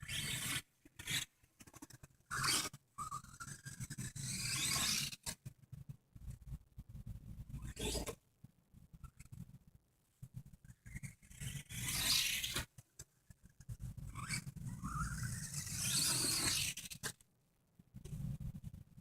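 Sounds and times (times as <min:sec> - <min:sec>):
toy car electric motor whining: 0:02.3 - 0:05.2, 0:11.4 - 0:12.6, 0:14.1 - 0:17.0
wheels scraping and rubbing: 0:14.1 - 0:17.1.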